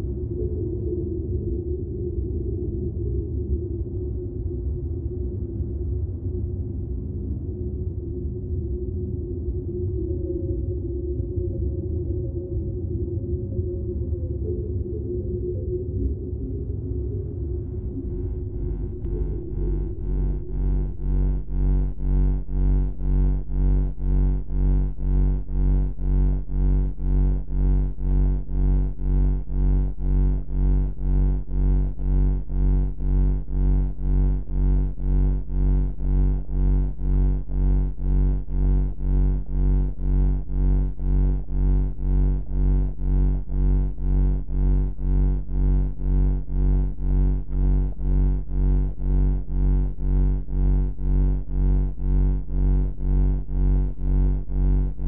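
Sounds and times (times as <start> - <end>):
deep throbbing hum: 17.4 - 55.0.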